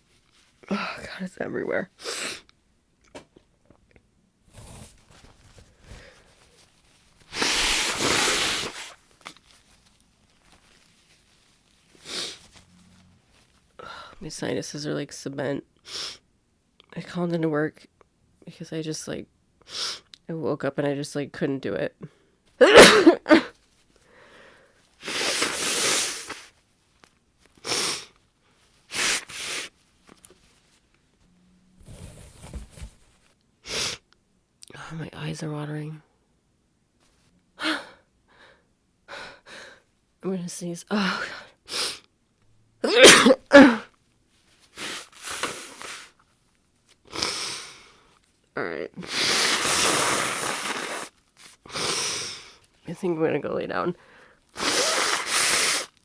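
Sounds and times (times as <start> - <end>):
woman blowing her nose: 2.0 - 2.5, 7.3 - 9.0, 12.0 - 12.6, 22.6 - 23.6, 25.0 - 26.5, 27.6 - 28.2, 28.9 - 29.8, 33.6 - 34.0, 42.8 - 43.9, 44.7 - 46.2, 47.1 - 48.0, 49.0 - 52.6, 54.5 - 56.0
woman sneezing: 22.6 - 23.6, 42.8 - 43.9
woman sniffling: 22.6 - 26.4, 42.9 - 43.9.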